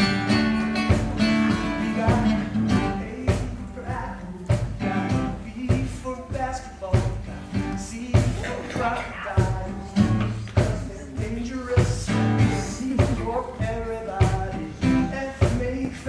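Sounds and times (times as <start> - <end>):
guitar strings strummed: 0.0 - 16.0
man singing: 0.0 - 16.0
percussive beat on instrument: 0.0 - 16.0.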